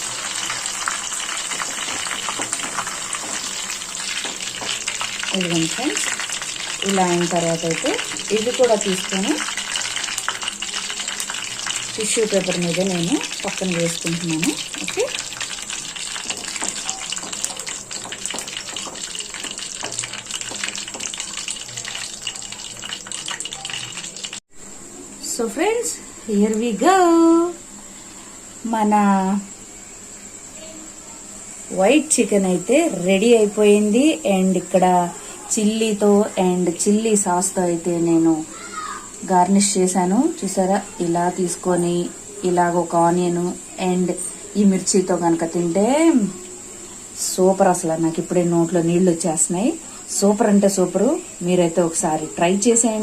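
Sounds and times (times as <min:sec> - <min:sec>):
crackles and pops: 0:00.0 - 0:24.4
frying in hot oil: 0:00.0 - 0:27.6, 0:30.4 - 0:53.0.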